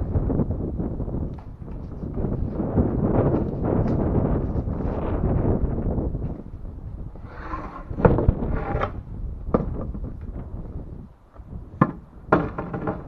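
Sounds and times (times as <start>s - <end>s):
sharp knocks and clunks: 9.5s - 10.0s, 11.8s - 13.0s.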